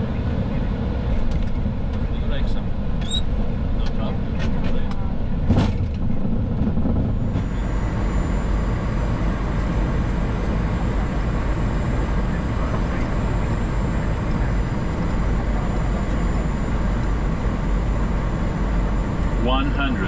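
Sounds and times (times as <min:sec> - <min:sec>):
aircraft cockpit rumble: 0:00.0 - 0:20.0
thin high whine: 0:07.4 - 0:20.0.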